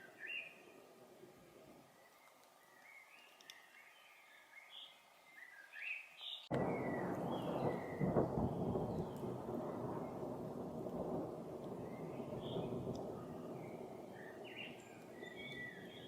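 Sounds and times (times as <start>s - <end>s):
songbird chirping: 0.0s - 16.0s
thunder rumbling: 6.5s - 16.0s.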